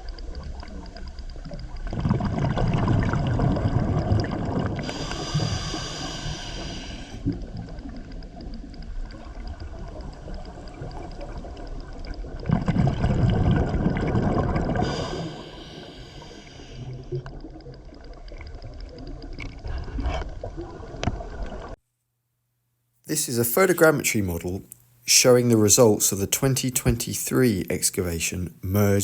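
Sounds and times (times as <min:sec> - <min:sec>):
exhaled bubbles burbling: 0:00.0 - 0:21.8
regulator inhalation hiss: 0:04.8 - 0:07.3, 0:14.8 - 0:17.0.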